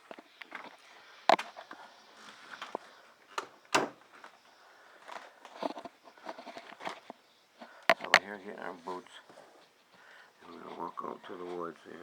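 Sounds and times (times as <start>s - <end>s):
rustling: 0.0s - 12.0s
light clicks: 5.1s - 8.4s.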